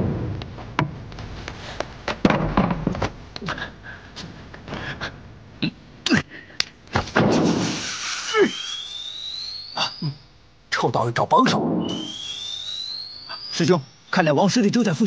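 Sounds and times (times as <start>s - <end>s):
sharp fight hits: 7.0s - 7.8s.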